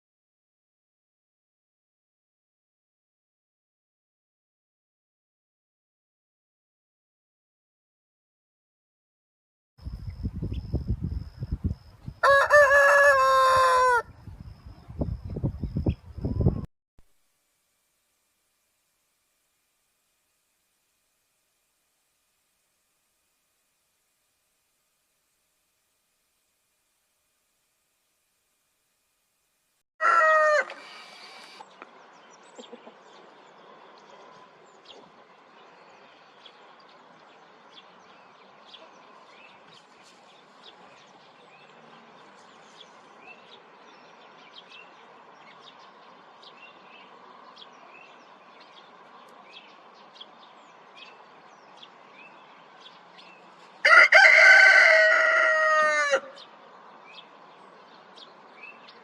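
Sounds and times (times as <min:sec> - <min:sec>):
rooster crowing: 0:12.2 - 0:14.1, 0:30.0 - 0:31.1, 0:53.8 - 0:56.5
chickens chirping and clucking: 0:32.3 - 0:33.5.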